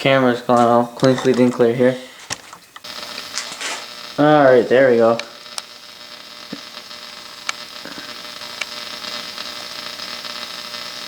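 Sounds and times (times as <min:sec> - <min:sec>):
radio loudspeaker hum and hiss: 0:00.0 - 0:11.0
faint clicks: 0:07.4 - 0:08.0.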